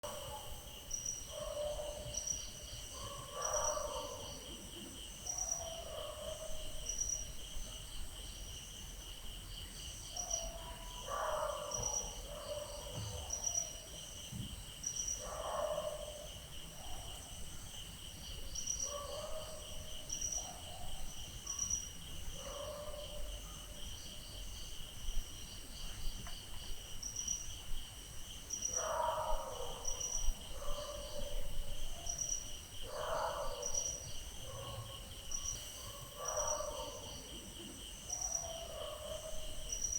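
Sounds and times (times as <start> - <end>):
distant dogs barking: 0.0 - 7.3, 10.1 - 14.2, 15.2 - 17.5, 18.8 - 24.3, 28.6 - 39.9
crickets chirping: 0.0 - 39.9.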